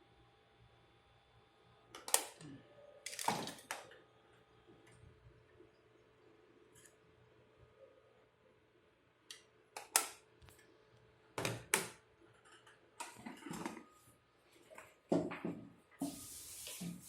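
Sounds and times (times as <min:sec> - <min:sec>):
faint steady hum: 0:00.0 - 0:17.0.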